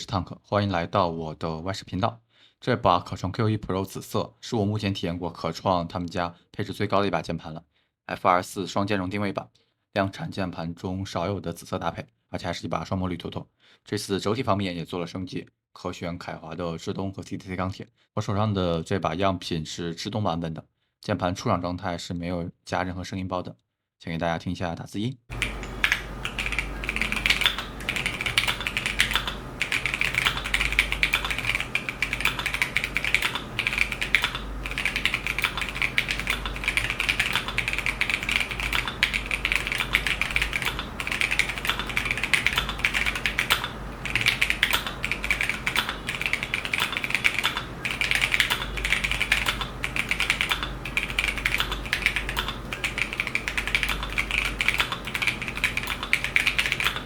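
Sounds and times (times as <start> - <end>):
keyboard keys rattling: 25.3 - 57.0
mechanical keyboard typing: 25.3 - 57.0.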